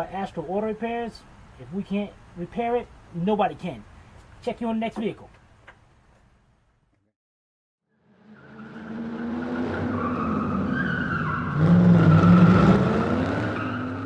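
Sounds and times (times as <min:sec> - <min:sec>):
car engine: 0:07.9 - 0:14.0.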